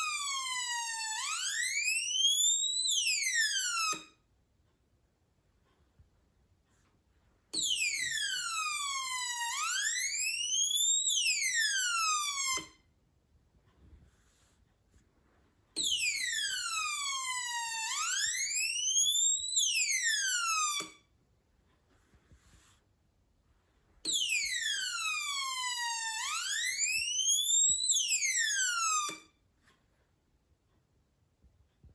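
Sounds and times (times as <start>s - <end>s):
electronic siren wailing: 0.0s - 4.1s, 7.6s - 12.8s, 15.8s - 21.0s, 24.1s - 29.3s.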